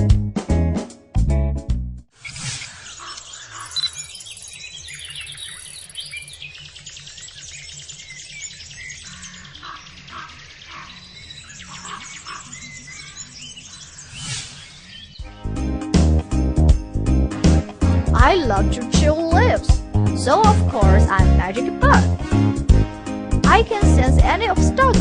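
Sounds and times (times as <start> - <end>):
birds chirping: 2.2 - 15.6
faint background music: 18.0 - 22.2, 23.4 - 25.0.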